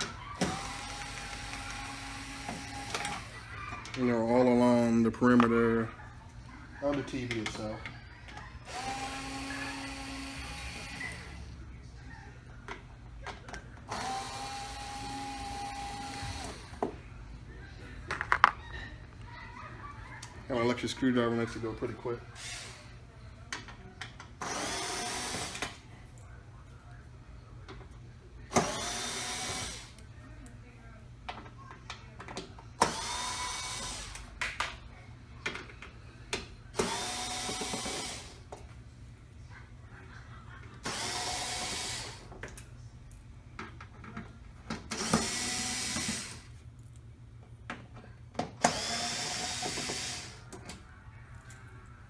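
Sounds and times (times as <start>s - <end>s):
electric screwdriver running: 0.0s - 3.4s, 8.6s - 11.4s, 13.9s - 16.8s, 24.4s - 25.8s, 28.5s - 30.0s, 32.8s - 34.3s, 36.8s - 38.4s, 40.8s - 42.3s, 44.9s - 46.5s, 48.6s - 50.4s.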